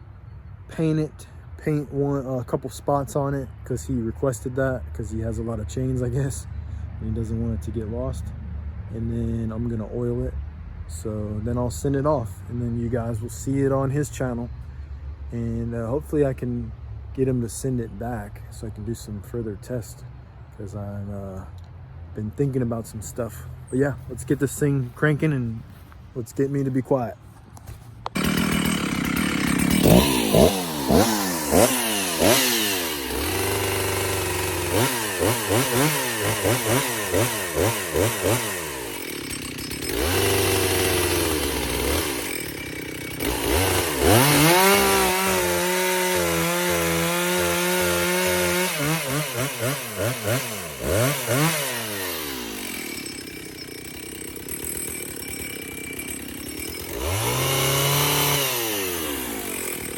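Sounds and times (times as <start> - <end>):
chainsaw revving and idling: 22.2 - 59.9.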